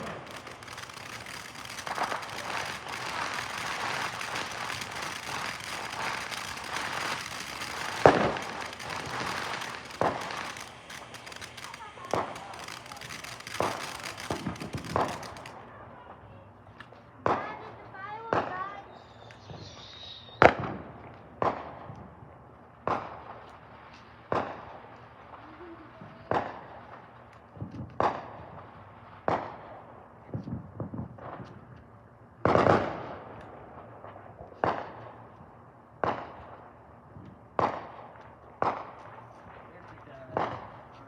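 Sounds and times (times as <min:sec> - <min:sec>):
fireworks bangs echoing: 0:00.0 - 0:15.6
small crackling pops: 0:00.0 - 0:15.6.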